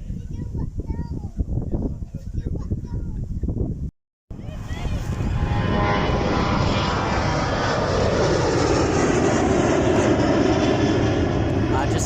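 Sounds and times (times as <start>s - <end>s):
plane engines passing: 4.3s - 12.0s.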